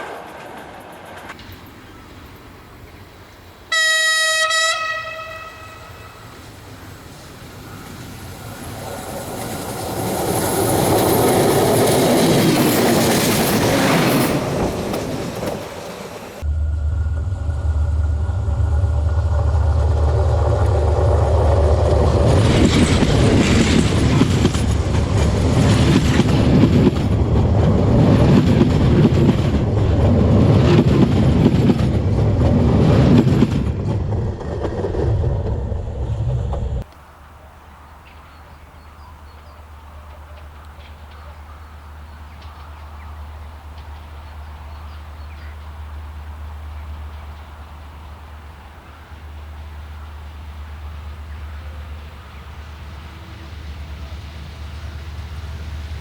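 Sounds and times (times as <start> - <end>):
wheels clacking on rails: 0.0 - 37.0, 37.8 - 56.0
train passing: 0.0 - 56.0
low rumble: 16.4 - 36.9.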